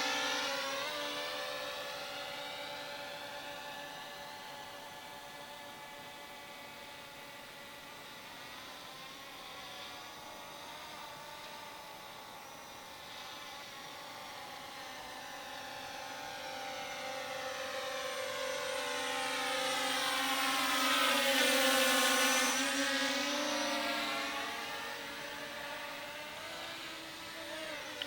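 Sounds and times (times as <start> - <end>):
drone propeller whine: 0.0 - 6.7, 10.8 - 28.0.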